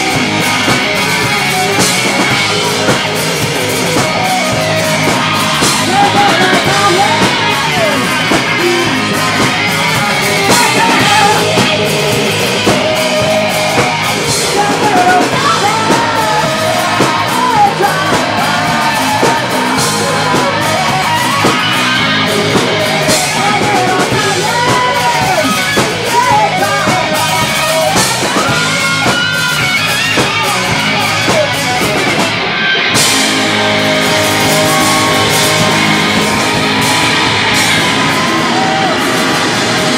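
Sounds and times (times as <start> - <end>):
person singing: 0.0 - 29.2
bass guitar: 0.0 - 39.9
drum kit: 0.0 - 39.9
electric guitar: 0.0 - 39.9.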